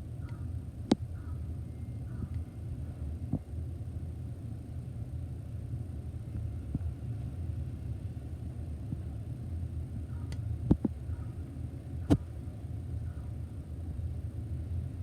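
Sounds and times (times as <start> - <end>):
low room hum: 0.0 - 15.0
faint crow cawing: 0.2 - 0.5, 1.1 - 2.3, 10.1 - 10.3.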